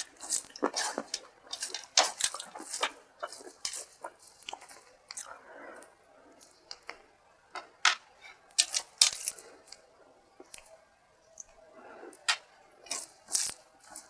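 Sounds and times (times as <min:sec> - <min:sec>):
person chewing food: 0:00.0 - 0:05.4.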